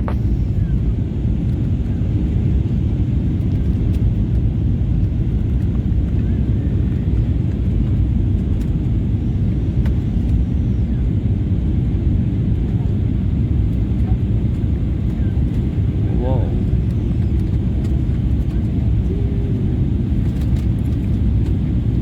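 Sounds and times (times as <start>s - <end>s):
aircraft cabin engine rumble: 0.0s - 22.0s.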